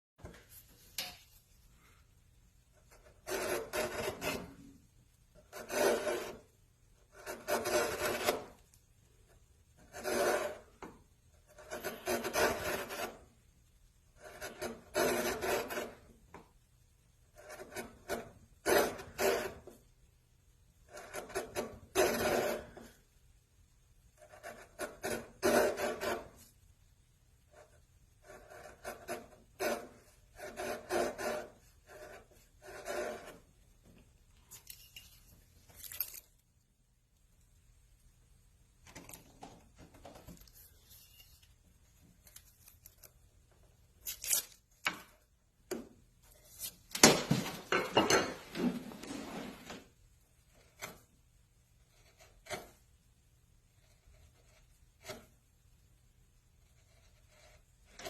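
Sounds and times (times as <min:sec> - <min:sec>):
hand tool rasping on wood: 0:05.5 - 0:06.4, 0:07.2 - 0:08.5, 0:09.9 - 0:10.6.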